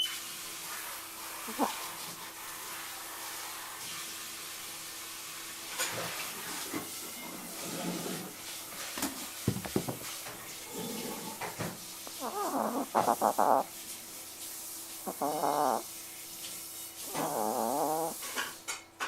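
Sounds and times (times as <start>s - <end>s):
dog snoring: 0.7s - 3.6s, 10.6s - 13.7s, 15.0s - 16.0s, 17.0s - 18.5s.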